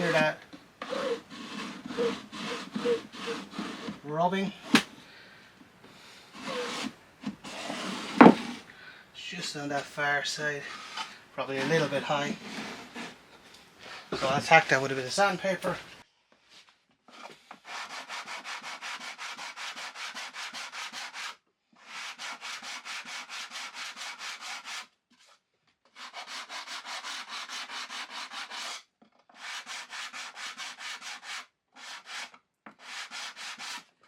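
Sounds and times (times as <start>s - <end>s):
sandpaper rubbing on plywood: 0.0s - 4.1s, 6.3s - 8.6s, 11.6s - 13.2s, 17.6s - 24.9s, 26.0s - 28.8s, 29.4s - 33.9s.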